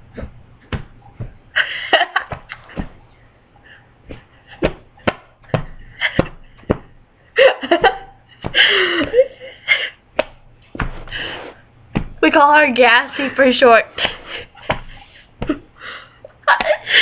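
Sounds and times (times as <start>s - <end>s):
laughter: 1.6s - 2.7s, 7.4s - 8.2s, 16.3s - 16.9s.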